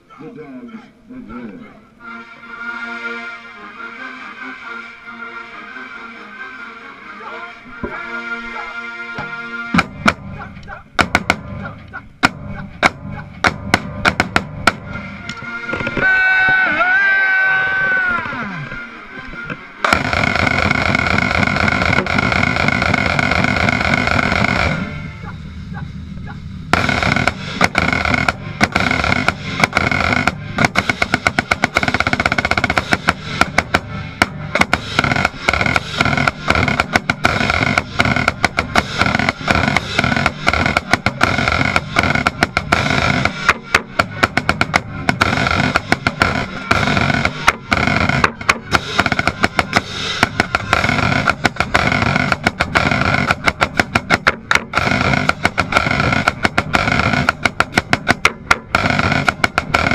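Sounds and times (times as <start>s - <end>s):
marching band chords: 1.0s - 59.9s
snare drum strokes: 9.2s - 16.6s, 26.7s - 59.9s.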